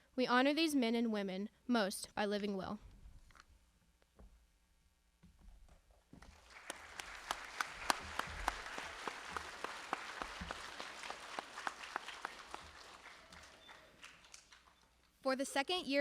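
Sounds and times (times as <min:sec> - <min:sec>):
audience applauding: 0:06.2 - 0:15.0.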